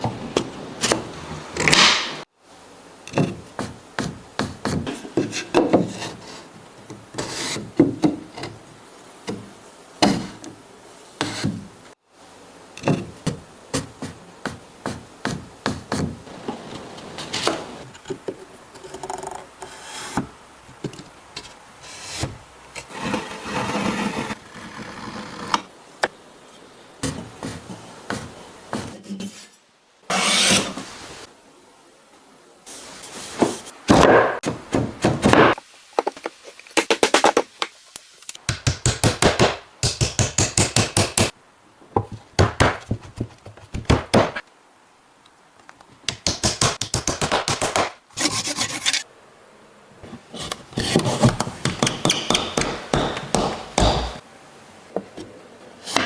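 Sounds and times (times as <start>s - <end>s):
wood rubbing and scraping: 13.8s - 25.6s, 27.0s - 31.2s, 47.2s - 49.1s, 50.0s - 54.2s
sharp knocks on wood: 42.0s - 44.4s, 46.1s - 48.0s, 51.2s - 54.2s.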